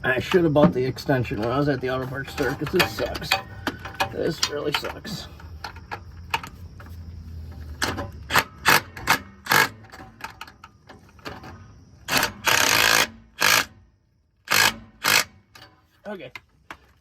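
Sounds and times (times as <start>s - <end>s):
ratchet wrench clicking: 14.5s - 15.7s.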